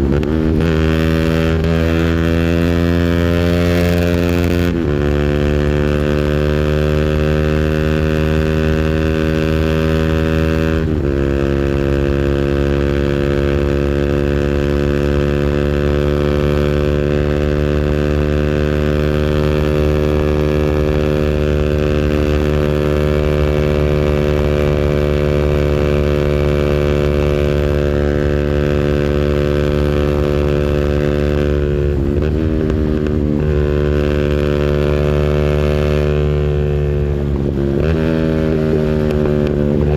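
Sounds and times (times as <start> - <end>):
engine droning at high revs: 0.0 - 39.9.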